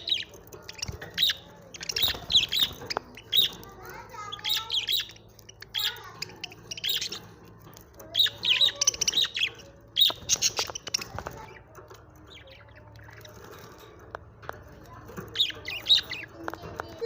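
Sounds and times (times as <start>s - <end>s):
budgerigars chirping: 0.0s - 7.4s, 8.1s - 11.7s, 15.3s - 16.9s.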